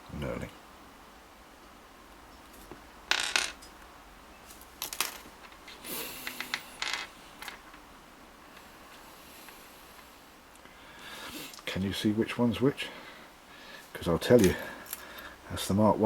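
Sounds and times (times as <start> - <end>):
small metal screws clinking: 4.8 - 5.7.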